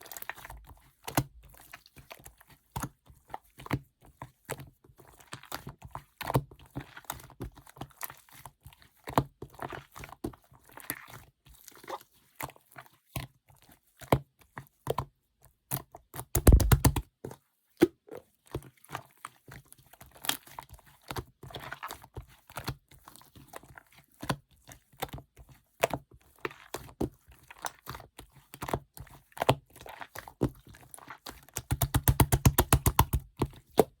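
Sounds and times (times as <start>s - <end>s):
rapid slime popping: 16.4s - 17.0s, 31.6s - 33.4s
slime squished by hand: 16.4s - 17.0s.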